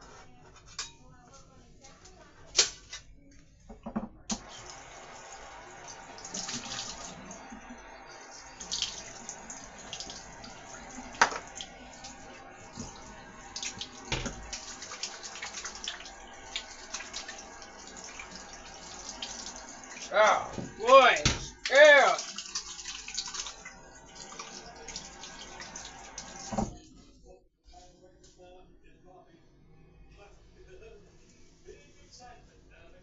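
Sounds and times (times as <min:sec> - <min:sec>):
clinks and knocks in sink: 0:03.7 - 0:04.2, 0:11.2 - 0:11.5, 0:14.1 - 0:14.6
tap running into sink: 0:03.8 - 0:07.6, 0:08.4 - 0:21.7, 0:22.3 - 0:26.8.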